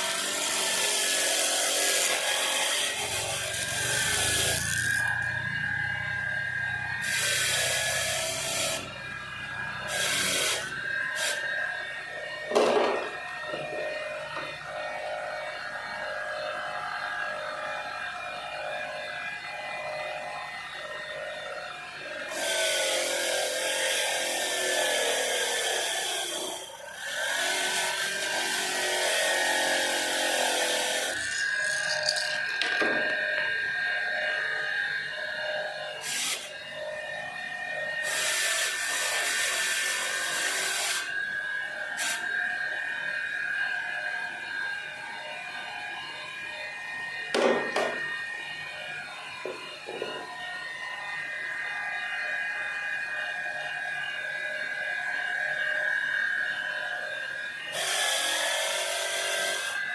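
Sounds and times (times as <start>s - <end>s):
grinder hissing against metal: 0.0s - 5.4s, 9.8s - 11.4s
electric grinder whining: 0.0s - 59.9s.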